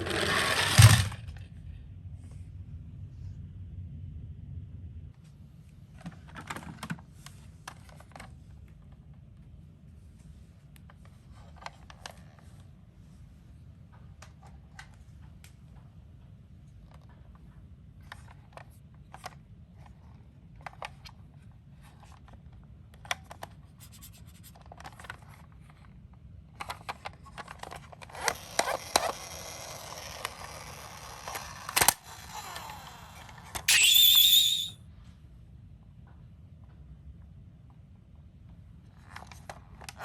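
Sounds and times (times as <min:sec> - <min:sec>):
toy rolling over cardboard: 0:00.0 - 0:01.3, 0:27.3 - 0:34.8
plastic toy clicks: 0:26.6 - 0:34.7
toy electronic siren: 0:28.4 - 0:34.8.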